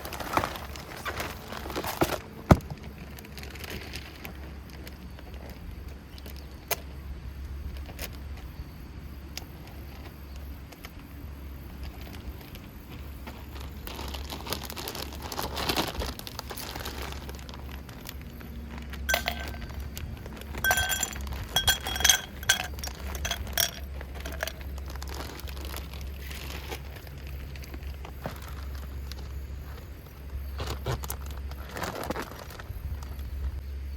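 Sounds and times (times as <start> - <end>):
cooking gear clinking: 19.1 - 25.1.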